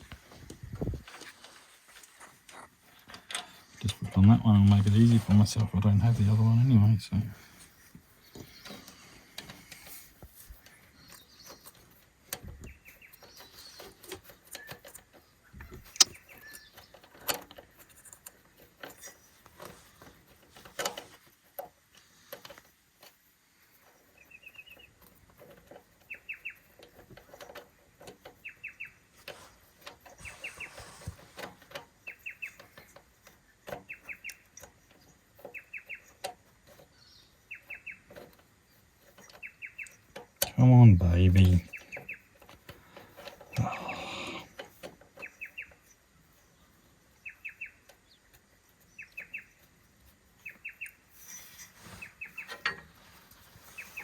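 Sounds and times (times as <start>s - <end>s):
bird chirping trill: 10.9s - 17.0s, 26.0s - 26.8s, 28.4s - 29.1s, 32.0s - 32.9s, 33.8s - 36.2s, 36.9s - 38.1s, 38.7s - 42.4s, 45.2s - 49.7s, 50.4s - 52.8s
tools clicking and knocking: 11.1s - 23.2s, 52.4s - 53.0s.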